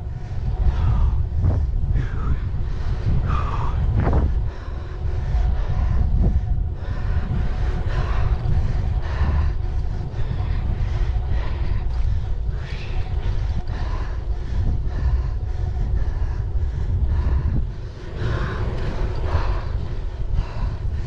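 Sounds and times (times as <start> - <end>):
faint steady whine: 0.0 - 21.0
wind buffeting microphone: 0.0 - 21.0
tyre and road noise: 16.7 - 21.0.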